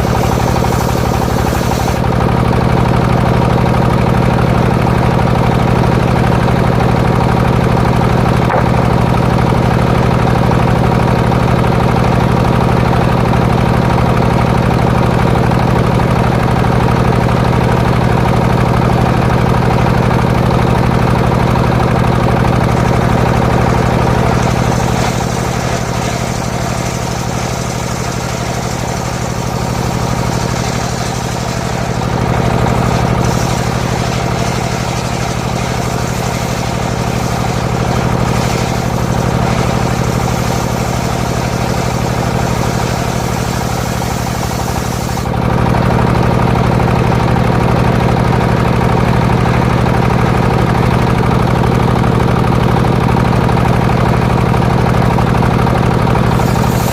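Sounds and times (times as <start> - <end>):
saw blade cutting wood hiss: 0.0 - 2.1, 22.7 - 45.3, 56.2 - 56.9
sawmill engine running: 0.0 - 56.9.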